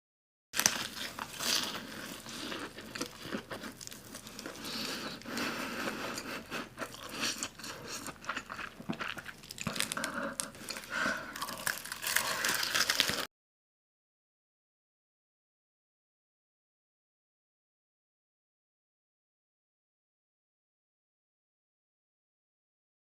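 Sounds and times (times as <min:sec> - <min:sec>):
chewing crunchy food: 0:00.6 - 0:13.3.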